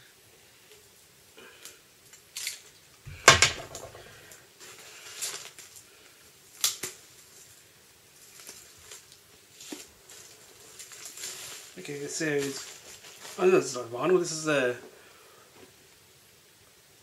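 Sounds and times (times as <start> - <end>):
packaging rustling: 8.2 - 13.6.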